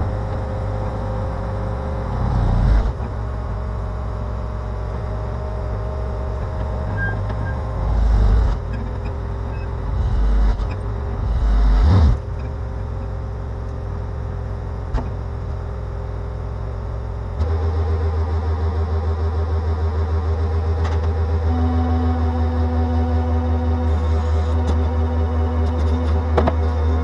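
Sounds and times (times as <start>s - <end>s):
diesel engine revving: 0.0s - 27.0s.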